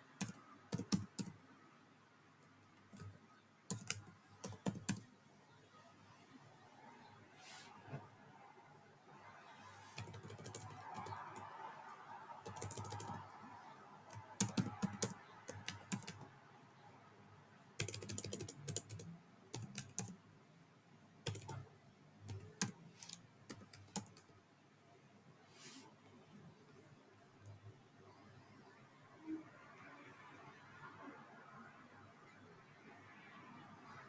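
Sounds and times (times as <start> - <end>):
typing on a computer keyboard: 0.2 - 1.4, 2.6 - 5.1, 10.0 - 11.6, 12.4 - 13.4, 14.1 - 16.3, 17.8 - 20.2, 21.2 - 21.6, 22.3 - 24.3.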